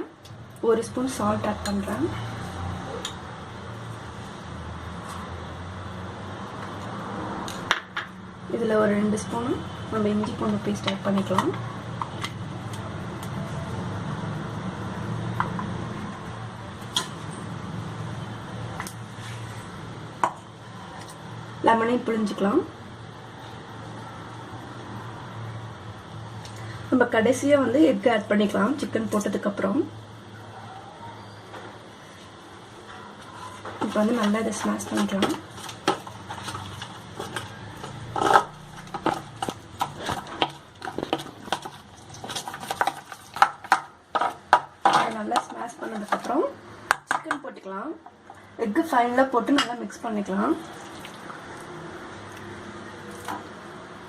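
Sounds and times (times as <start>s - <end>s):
thick paste being mashed: 33.6s - 47.3s.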